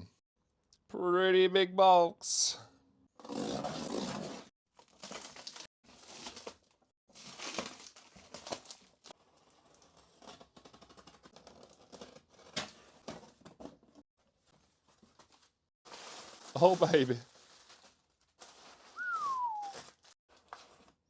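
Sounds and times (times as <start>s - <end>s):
cardboard packaging crinkling: 4.7s - 9.1s, 14.8s - 21.0s
packaging tearing: 4.8s - 8.9s.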